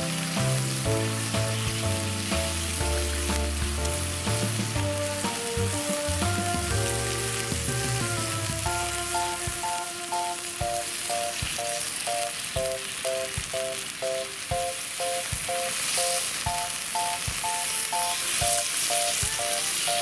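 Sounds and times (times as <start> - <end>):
background music: 0.0 - 13.1
food sizzling: 0.0 - 20.0.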